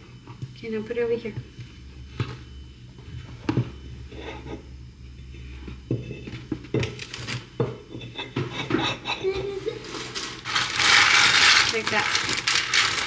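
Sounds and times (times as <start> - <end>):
glassware and utensils clinking: 6.8 - 13.0.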